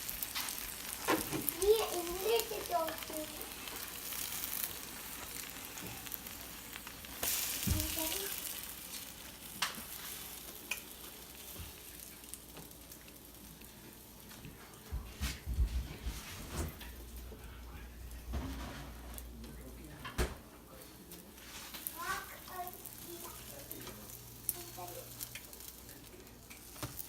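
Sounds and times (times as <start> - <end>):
bread sizzling in a pan: 0.0 - 27.0.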